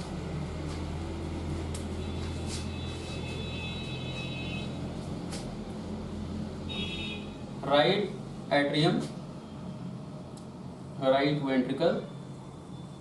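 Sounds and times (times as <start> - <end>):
low droning room hum: 0.0 - 13.0
faint high whine: 6.7 - 13.0.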